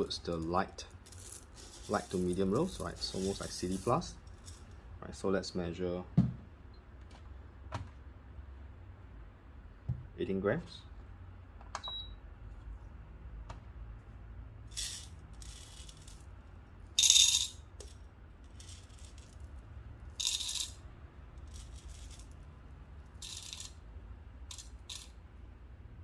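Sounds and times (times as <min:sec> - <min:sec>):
coffee beans rattling into a cup: 0:00.0 - 0:04.7, 0:14.7 - 0:16.3, 0:17.0 - 0:20.8, 0:21.4 - 0:23.8, 0:24.5 - 0:25.1.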